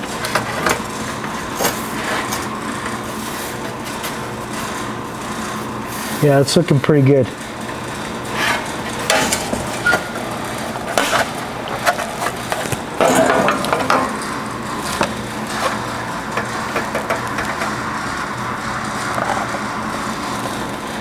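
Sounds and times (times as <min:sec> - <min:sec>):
steady low hum: 0:00.0 - 0:21.0
sheet metal knocks and clanks: 0:08.4 - 0:17.8.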